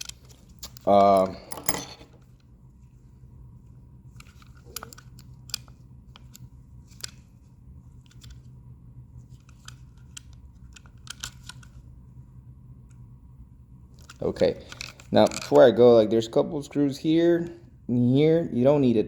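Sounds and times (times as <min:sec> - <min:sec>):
steady low hum: 0:00.0 - 0:19.0
plastic parts clicking: 0:04.2 - 0:07.2, 0:09.3 - 0:11.8.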